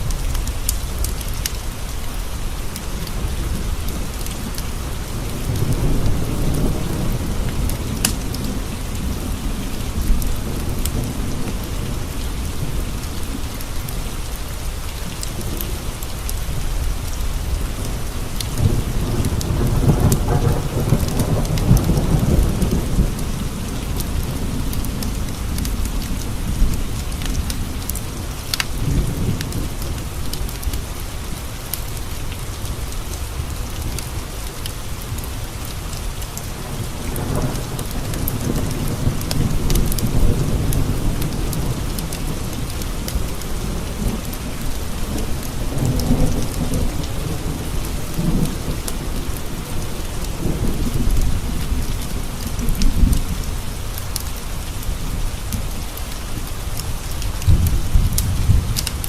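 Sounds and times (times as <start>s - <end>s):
rain on window panes: 0.0s - 59.0s
rolling thunder: 16.8s - 30.8s, 36.6s - 53.7s, 57.3s - 59.0s.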